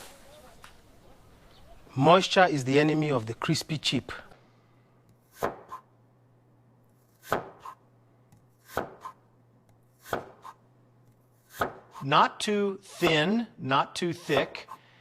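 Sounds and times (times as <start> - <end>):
knife slicing on chopping board: 7.0 - 7.8, 8.6 - 9.2, 9.9 - 10.6, 11.4 - 12.0.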